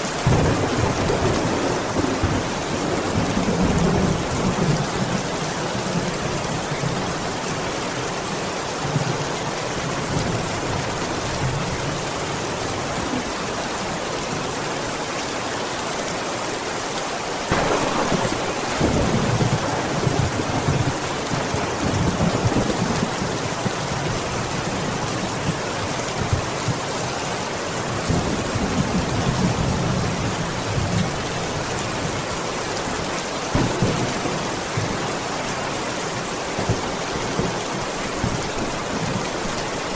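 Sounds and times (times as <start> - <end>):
heavy rain falling: 0.0 - 39.9
thunder rumbling: 0.2 - 7.4, 17.5 - 26.5, 33.5 - 37.6.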